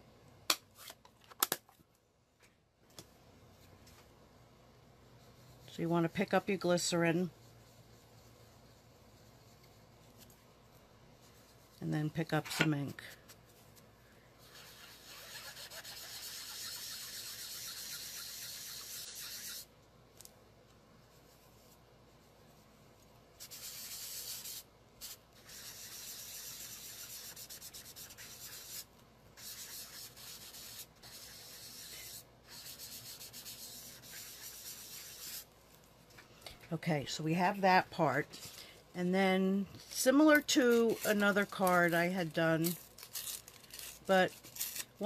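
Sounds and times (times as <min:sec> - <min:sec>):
sponge rubbing on cardstock: 0:14.4 - 0:19.7, 0:23.4 - 0:35.5.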